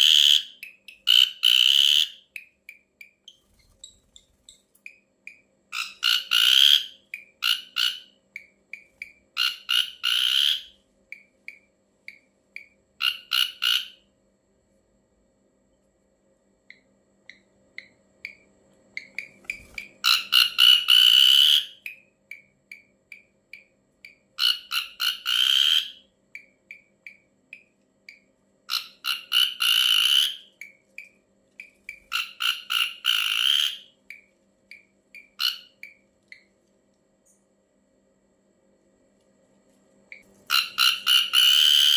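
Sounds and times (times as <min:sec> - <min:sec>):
harsh grating bird calls: 0:40.5 - 0:41.9.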